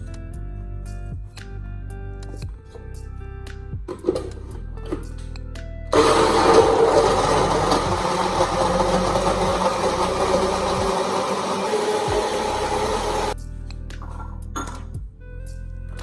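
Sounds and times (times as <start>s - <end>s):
kitchen appliance motor running: 5.9s - 13.4s.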